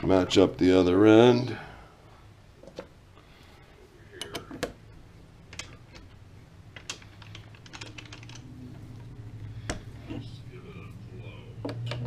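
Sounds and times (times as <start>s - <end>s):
faint low hum: 0.0s - 12.0s
metallic clicks and knocks: 6.7s - 8.5s.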